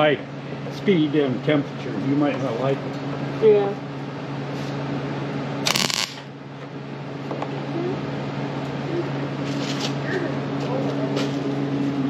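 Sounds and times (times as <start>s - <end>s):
steady electrical hum: 0.0s - 12.0s
welder arc crackling: 5.6s - 6.3s.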